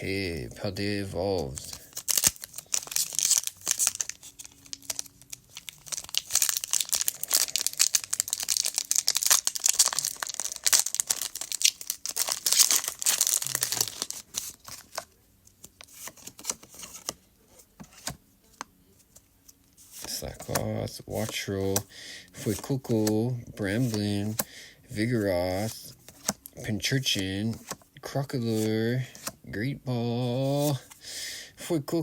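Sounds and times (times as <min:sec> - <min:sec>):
foil wrapper tearing and crinkling: 0:01.9 - 0:15.0.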